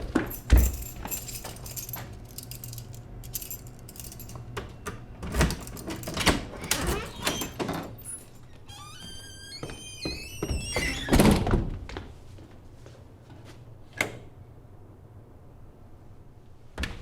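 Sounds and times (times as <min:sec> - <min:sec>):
metallic jingle: 0:00.3 - 0:04.4.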